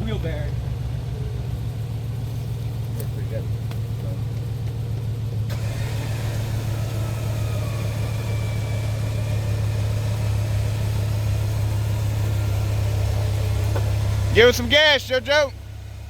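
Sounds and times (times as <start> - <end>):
vehicle engine idling: 0.0 - 16.0.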